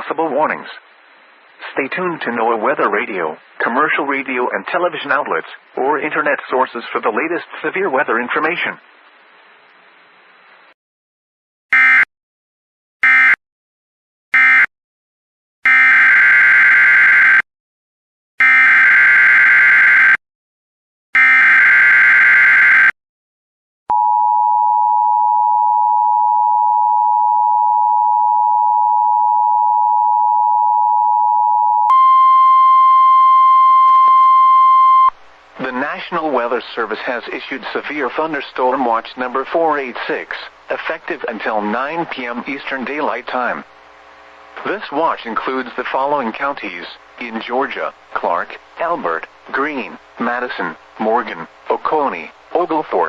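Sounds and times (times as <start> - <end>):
steady weather-radio tone: 0.0 - 1.0, 1.6 - 9.2, 34.9 - 43.7, 44.6 - 53.0
two-tone attention signal: 23.9 - 35.1.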